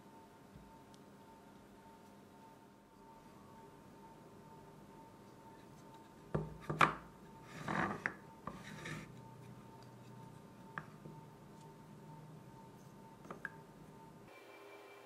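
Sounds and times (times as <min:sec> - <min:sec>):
faint steady hum: 0:00.0 - 0:15.0
rubbing or scraping: 0:07.5 - 0:09.1.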